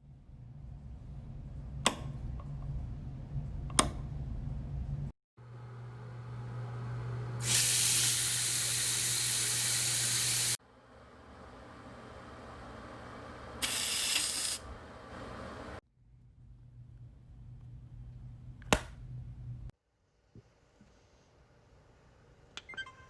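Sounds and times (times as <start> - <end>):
low steady hum: 0.0 - 7.4, 14.7 - 19.7
hissing spray: 7.4 - 10.6, 13.6 - 14.6.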